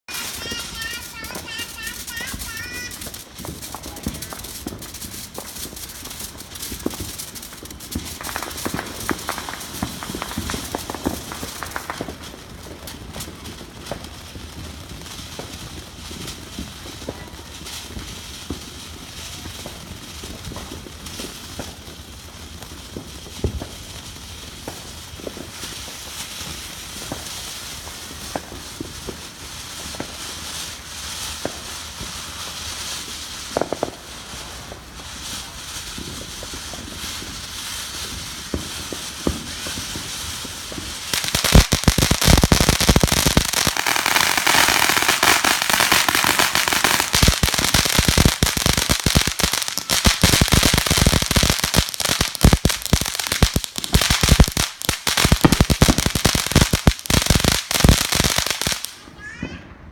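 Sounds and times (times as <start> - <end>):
rapid firecracker cracks: 0.1 - 18.6, 24.5 - 59.4
fireworks hissing: 0.1 - 59.4
scattered pops: 41.1 - 58.2.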